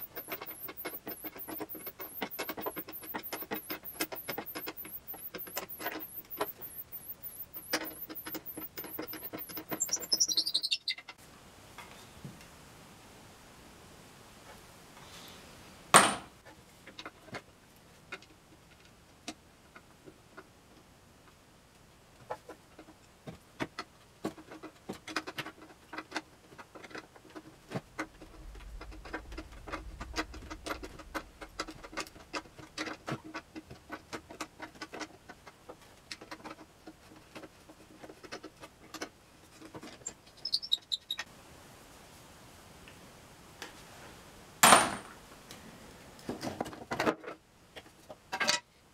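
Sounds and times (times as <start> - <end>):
tools and wooden parts clicking: 0.0 - 11.2
sharp knock: 16.0 - 16.3.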